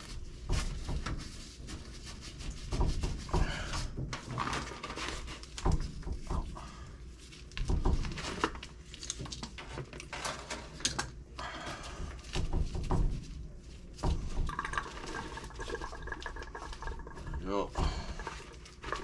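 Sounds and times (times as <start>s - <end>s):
knocks and clicks of handling: 7.5s - 11.2s.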